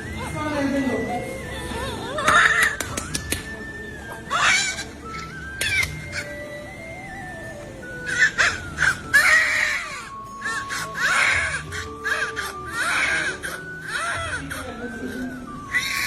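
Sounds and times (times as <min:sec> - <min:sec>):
background music: 0:00.0 - 0:16.0
newborn baby crying: 0:01.2 - 0:03.0, 0:04.1 - 0:06.4, 0:08.0 - 0:16.0.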